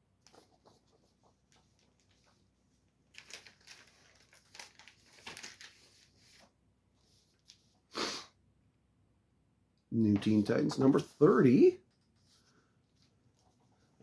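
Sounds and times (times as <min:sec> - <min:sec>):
plastic bags crinkling: 0:03.0 - 0:06.2.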